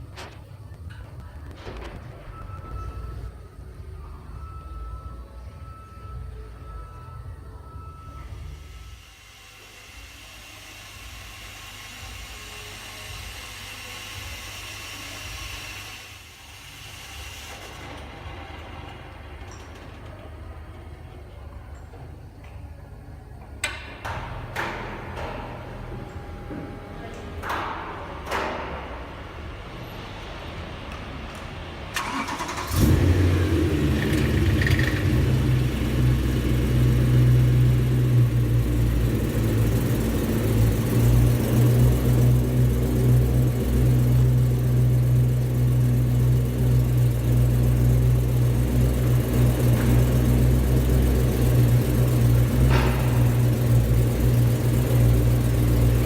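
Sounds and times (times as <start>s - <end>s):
car engine starting and idling: 0.0s - 9.0s, 23.6s - 56.0s.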